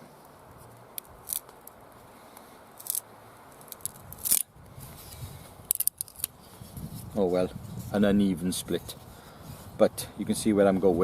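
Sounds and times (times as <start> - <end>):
stick splitting and cracking: 0.5 - 8.0.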